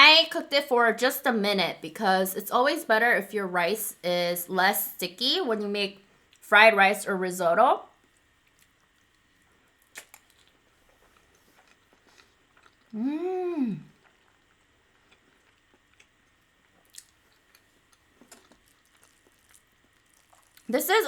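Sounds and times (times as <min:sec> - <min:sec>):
soft chewing: 0:07.9 - 0:21.0
person humming mmm: 0:12.9 - 0:14.0.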